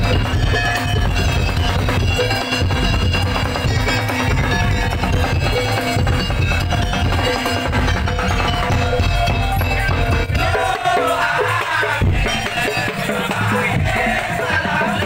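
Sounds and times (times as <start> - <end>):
heavy steady drumming: 0.0 - 15.0
wavering melody: 0.0 - 15.0.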